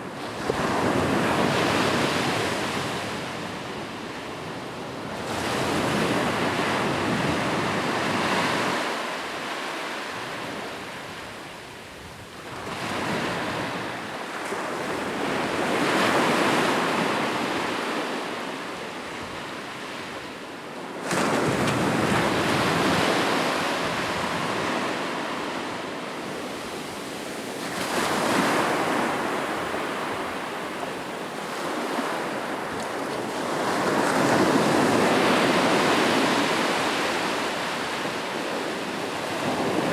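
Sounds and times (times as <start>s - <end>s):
ocean waves breaking on shore: 20.8s - 39.9s.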